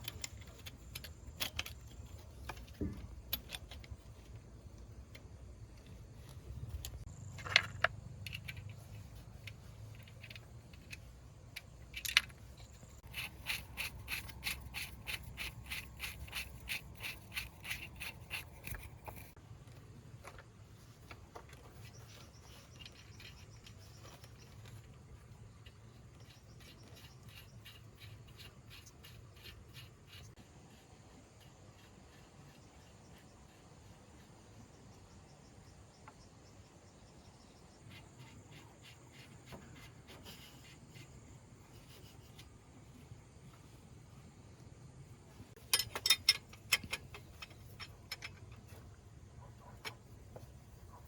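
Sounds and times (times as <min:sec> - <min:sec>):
scraping on metal: 0:45.6 - 0:50.0.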